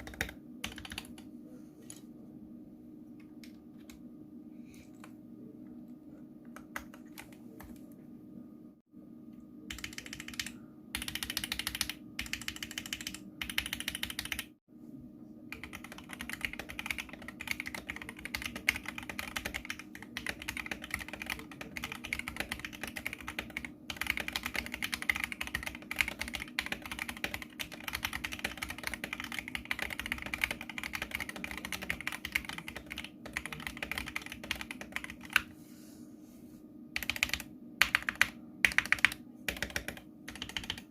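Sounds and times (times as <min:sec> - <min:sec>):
mechanical keyboard typing: 0:00.0 - 0:01.2, 0:06.6 - 0:07.8, 0:09.7 - 0:14.5, 0:15.5 - 0:35.5, 0:37.0 - 0:40.9
faint steady hum: 0:00.0 - 0:40.9.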